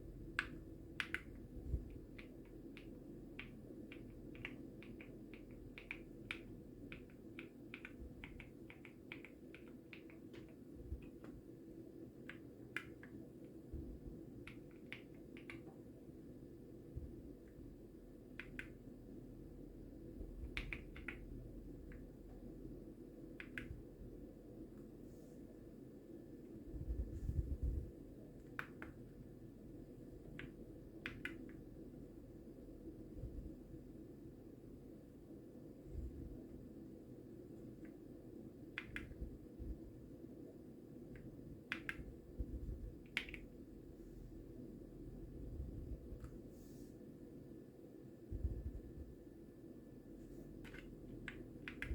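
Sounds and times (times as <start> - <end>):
steady low hum: 0.0 - 51.9
mechanical keyboard key clicks: 0.3 - 11.2.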